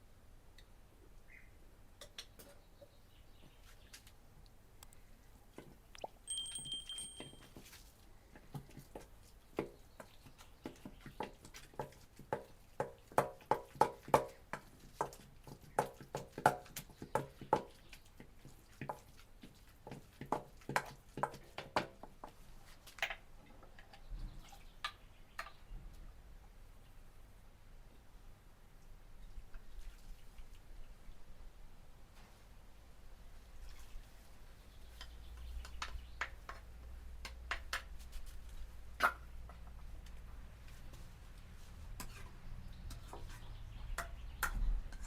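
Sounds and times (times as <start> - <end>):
brief high tone: 6.3 - 7.5
light ringing taps: 6.3 - 7.6.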